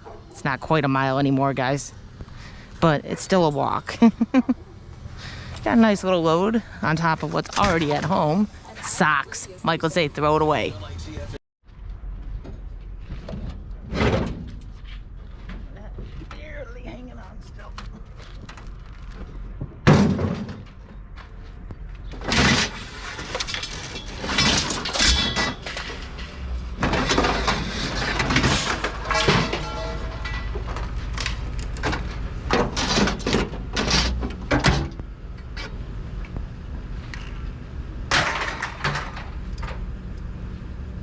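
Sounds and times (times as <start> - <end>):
scrap metal clanking: 22.2 - 34.9.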